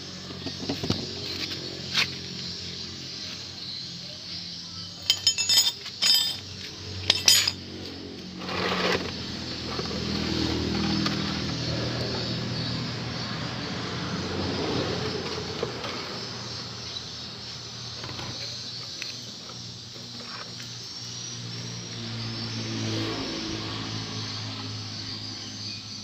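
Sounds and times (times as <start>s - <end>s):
metal parts and tools clinking: 4.9s - 7.7s.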